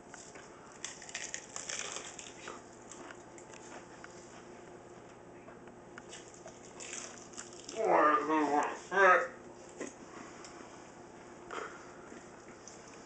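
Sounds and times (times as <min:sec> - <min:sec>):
chili peppers crunching while chewed: 0:00.0 - 0:04.4, 0:06.0 - 0:07.9.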